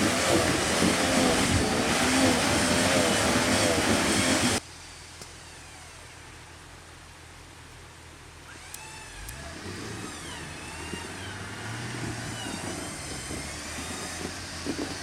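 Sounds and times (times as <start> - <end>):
wavering high whine: 0.0 - 6.2
off-road vehicle engine: 0.0 - 15.0.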